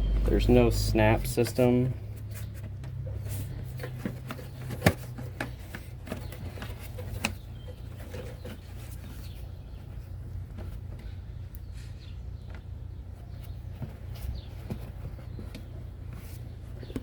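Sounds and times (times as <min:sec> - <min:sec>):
steady low hum: 0:00.0 - 0:17.0
plastic parts clicking and knocking: 0:02.5 - 0:11.6.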